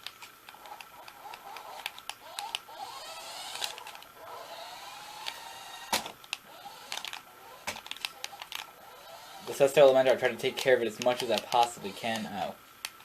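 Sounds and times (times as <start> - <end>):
small electric motor whining: 0.5 - 12.5
light plastic clicks: 10.6 - 13.0.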